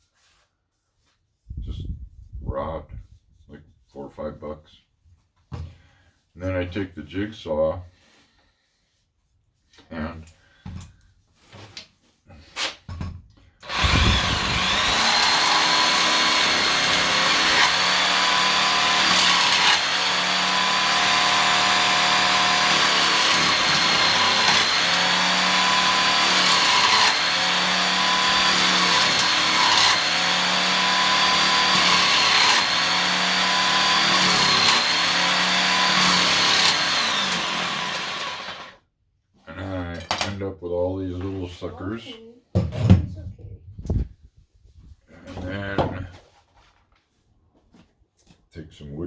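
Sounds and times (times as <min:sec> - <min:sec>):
jigsaw cutting wood: 0:13.6 - 0:38.8.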